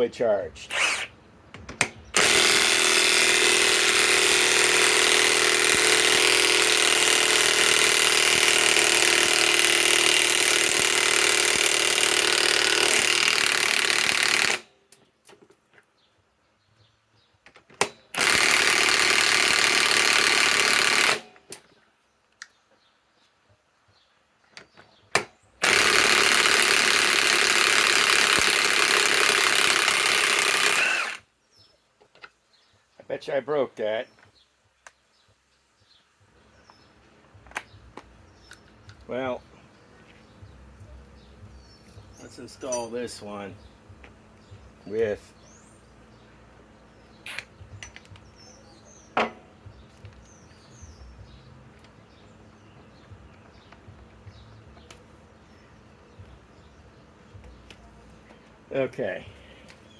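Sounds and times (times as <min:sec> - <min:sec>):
impact wrench hammering: 0:00.8 - 0:14.7, 0:49.1 - 0:49.6.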